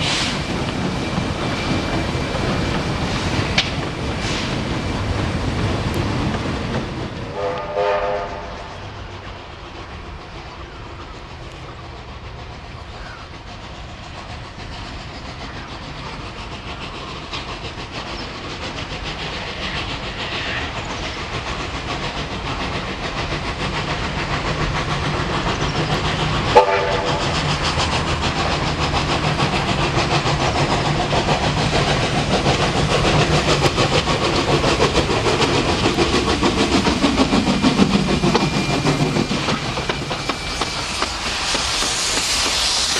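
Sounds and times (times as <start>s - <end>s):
steam locomotive chugging: 0.0s - 42.9s
steam whistle blasts: 7.3s - 8.6s, 26.5s - 27.2s.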